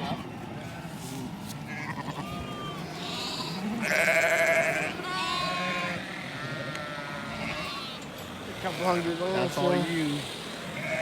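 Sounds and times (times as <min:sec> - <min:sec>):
sheep bleating: 0:01.7 - 0:08.0, 0:08.7 - 0:11.0.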